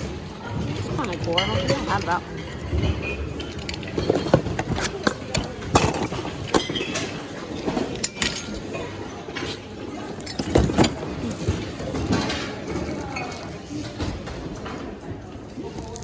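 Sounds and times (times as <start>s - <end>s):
knocks and clinks of goods handled: 0.0s - 16.0s
murmur of background chatter: 0.0s - 16.0s.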